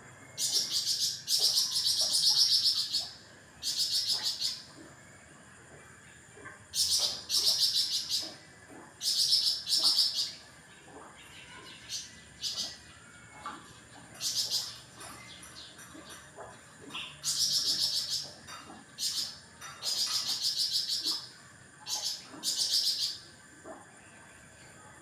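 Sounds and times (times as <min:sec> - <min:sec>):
songbird trilling: 0:00.4 - 0:04.7, 0:06.7 - 0:08.4, 0:09.0 - 0:10.5, 0:11.2 - 0:12.9, 0:14.2 - 0:16.2, 0:16.9 - 0:23.3.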